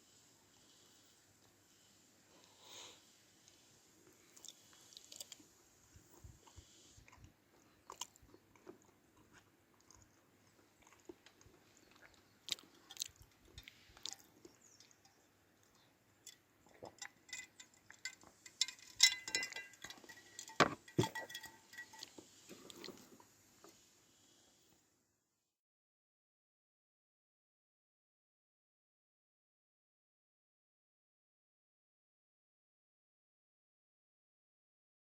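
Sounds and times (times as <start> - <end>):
objects being handled: 16.3 - 23.2
ringing clink: 18.6 - 22.1.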